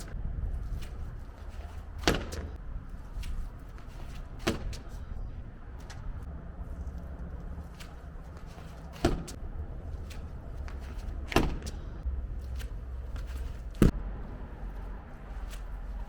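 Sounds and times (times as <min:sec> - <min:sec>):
low hum: 0:00.0 - 0:16.0
heavy thuds: 0:01.4 - 0:02.6, 0:07.8 - 0:14.1.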